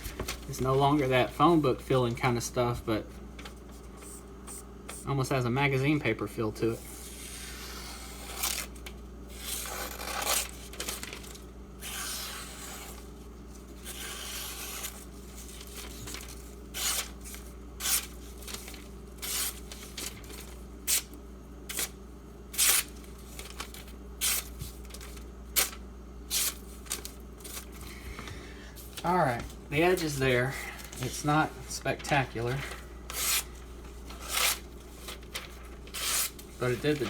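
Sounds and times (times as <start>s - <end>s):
knife slicing paper: 9.3s - 13.1s, 13.8s - 21.1s, 21.7s - 27.7s, 32.0s - 37.0s.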